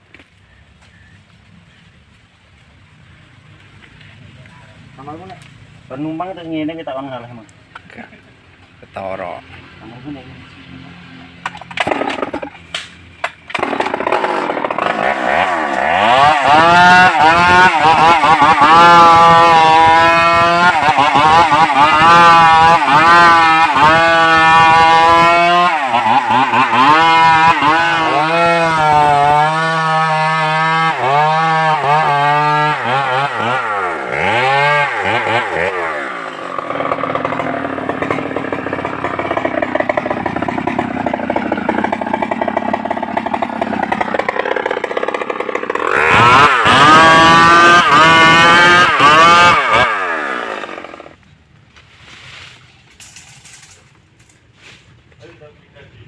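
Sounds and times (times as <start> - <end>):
chainsaw cutting tree trunk: 11.4 - 51.2.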